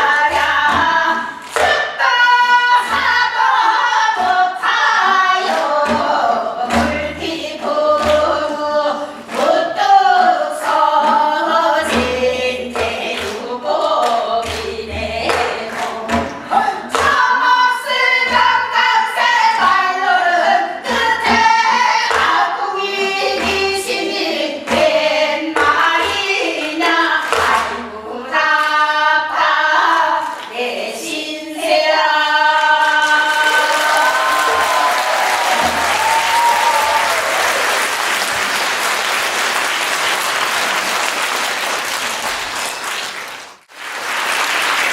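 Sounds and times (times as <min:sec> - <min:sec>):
voices singing folk song: 0:00.0 - 0:37.8.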